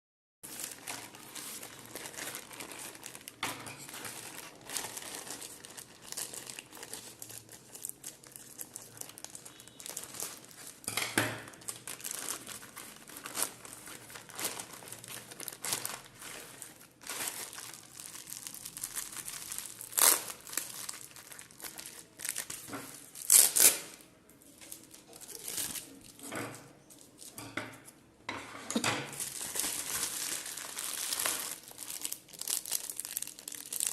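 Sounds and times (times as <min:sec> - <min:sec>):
packaging crinkling and rustling: 0:00.5 - 0:27.4, 0:29.0 - 0:33.9
sharp packaging tears: 0:17.2 - 0:22.6, 0:23.2 - 0:24.0.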